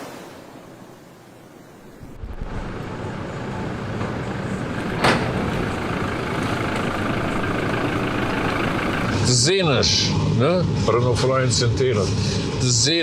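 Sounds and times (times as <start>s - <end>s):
vehicle engine running: 2.3s - 9.5s.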